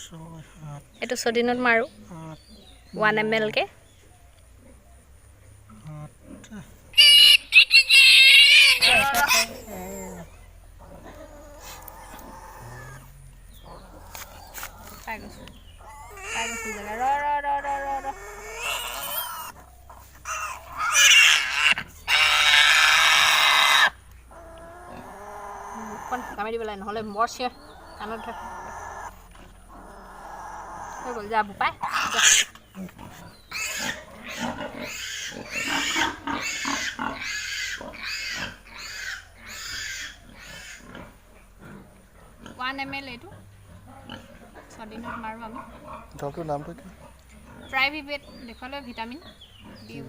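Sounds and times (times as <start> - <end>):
piglet squealing: 7.0 - 10.3, 11.1 - 13.1, 15.8 - 19.6, 20.2 - 26.6, 27.6 - 32.6, 33.5 - 40.9.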